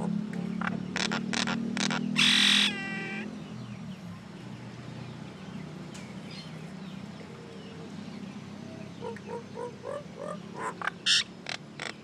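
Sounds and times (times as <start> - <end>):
faint bird chattering calls: 0.0 - 4.1, 5.0 - 12.0
myna harsh squawk: 1.0 - 3.3.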